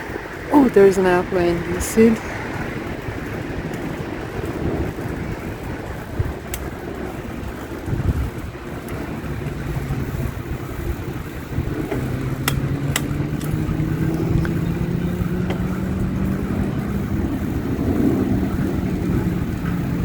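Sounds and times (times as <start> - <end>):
vehicle engine hum: 0.0 - 20.0
wind noise on microphone: 0.0 - 20.0
sharp clicks: 11.8 - 14.6.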